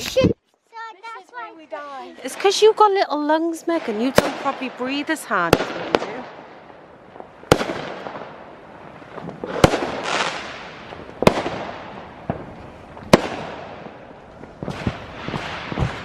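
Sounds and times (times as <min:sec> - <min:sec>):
fireworks crackling: 0:00.0 - 0:16.0
fireworks bangs: 0:01.4 - 0:16.0.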